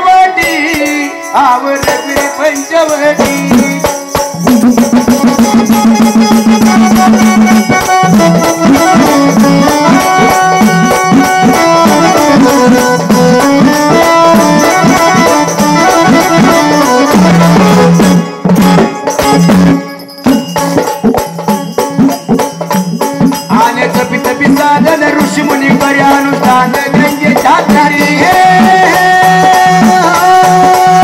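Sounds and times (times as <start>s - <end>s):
jingling tambourine percussion: 0.0s - 31.0s
fast steady drum: 0.3s - 31.0s
folk melody line: 3.1s - 31.0s.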